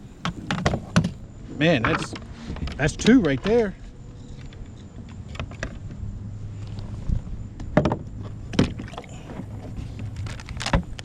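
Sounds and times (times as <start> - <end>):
steady low hum: 3.7 - 11.0.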